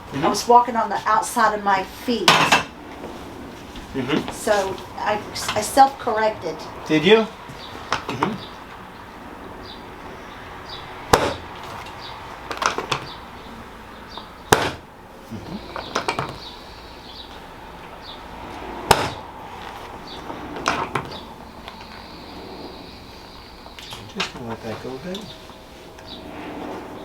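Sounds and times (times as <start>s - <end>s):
loud joint clicks: 15.6s - 27.0s.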